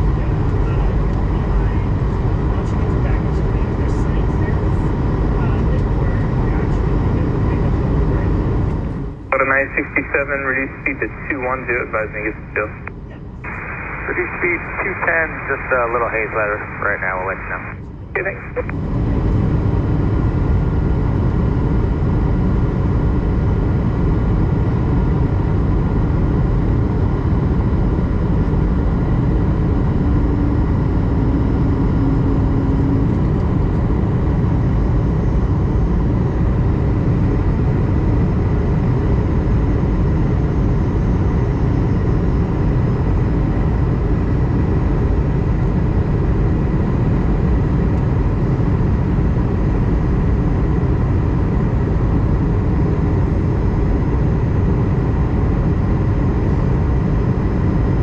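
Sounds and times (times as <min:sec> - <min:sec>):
airliner cabin engine noise: 0:00.0 - 0:58.0
faint steady hums: 0:00.0 - 0:58.0.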